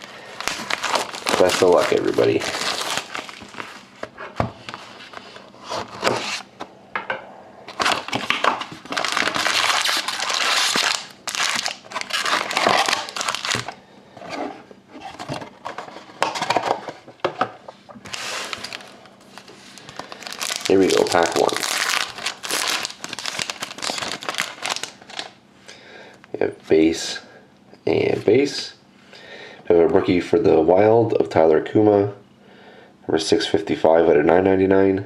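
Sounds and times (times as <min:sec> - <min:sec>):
plastic and foil wrapping crinkling: 0:00.0 - 0:03.9, 0:07.7 - 0:13.8, 0:18.0 - 0:25.4.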